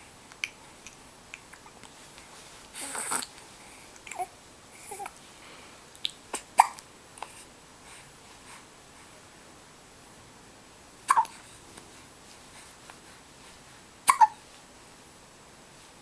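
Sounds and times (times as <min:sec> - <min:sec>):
breathy baby vocal sound: 0:01.4 - 0:05.6
baby hiccupping: 0:06.3 - 0:06.8, 0:11.1 - 0:11.4, 0:14.0 - 0:14.4.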